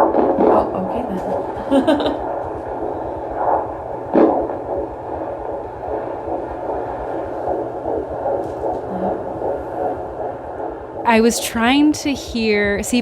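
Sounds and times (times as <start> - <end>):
whooshing heartbeat pulse: 0.0 - 13.0.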